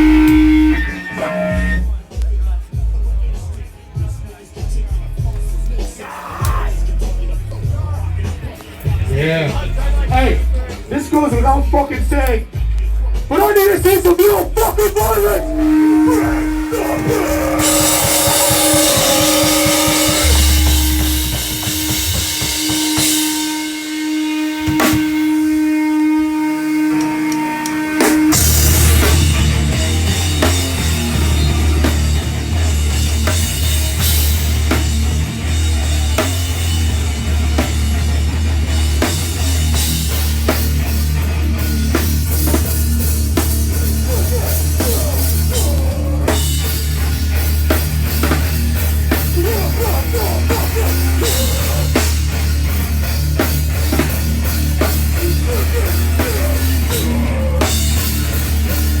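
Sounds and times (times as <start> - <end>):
pounding drums: 0.0 - 1.9, 13.3 - 25.6, 27.0 - 59.0
bass guitar: 0.0 - 26.4, 27.8 - 59.0
distorted guitars: 0.0 - 59.0
cymbal and snare hits: 15.5 - 25.7, 26.9 - 32.4.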